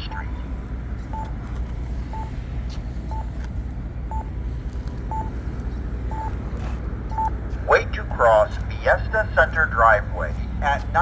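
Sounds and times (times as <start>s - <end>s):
traffic rumble: 0.0s - 11.0s
pedestrian signal locator beeps: 1.0s - 1.4s, 2.1s - 2.4s, 3.1s - 3.4s, 4.1s - 4.4s, 5.1s - 5.4s, 6.1s - 6.4s, 7.1s - 7.4s.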